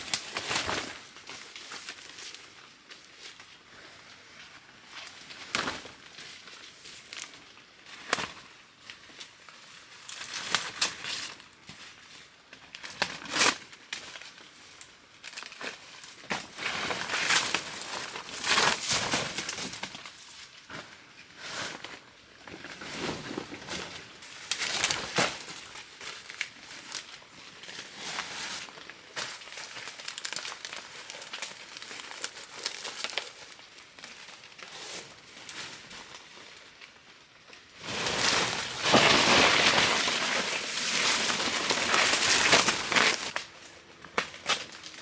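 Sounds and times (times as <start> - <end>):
dry material rustling: 37.8 - 43.4.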